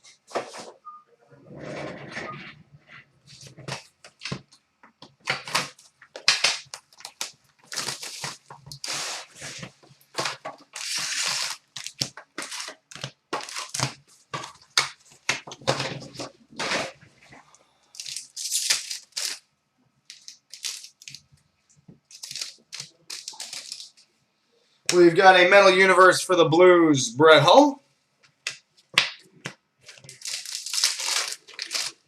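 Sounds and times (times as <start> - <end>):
foil wrapper tearing and crinkling: 5.3 - 15.4, 17.9 - 19.4, 20.1 - 21.2, 22.1 - 24.0, 29.9 - 32.0.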